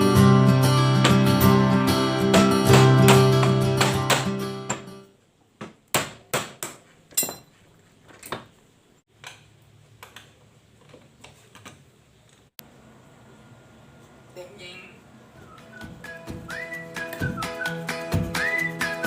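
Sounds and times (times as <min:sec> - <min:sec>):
metal tools knocking on metal: 0:07.1 - 0:07.6.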